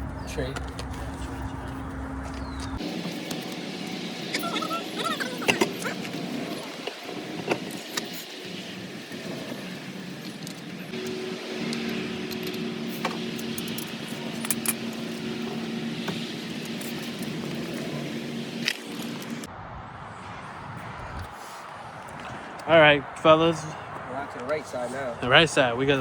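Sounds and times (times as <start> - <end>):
steady hum: 0.0 - 19.5.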